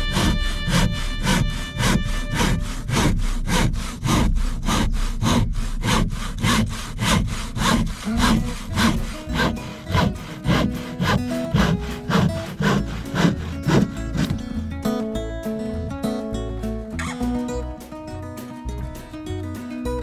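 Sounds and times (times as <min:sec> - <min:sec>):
hand saw cutting wood: 0:00.0 - 0:14.6.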